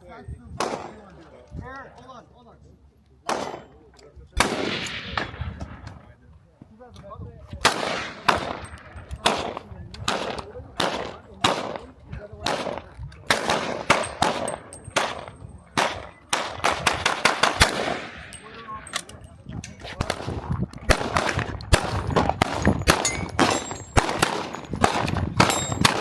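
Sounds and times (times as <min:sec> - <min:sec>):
gunshots with echo: 0:03.3 - 0:03.6, 0:04.4 - 0:05.8, 0:07.6 - 0:19.2, 0:20.0 - 0:26.0.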